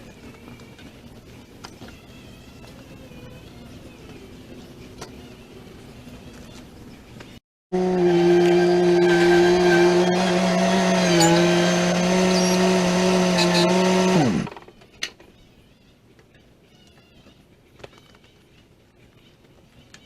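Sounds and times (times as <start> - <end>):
machine motor running: 7.8 - 14.5.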